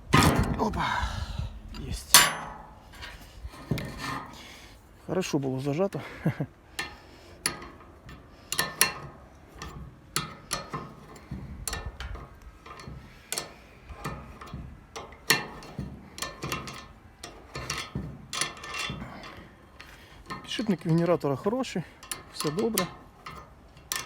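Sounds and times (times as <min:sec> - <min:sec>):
metallic knocks from tools: 0:02.1 - 0:04.1, 0:06.8 - 0:21.3, 0:22.0 - 0:24.0.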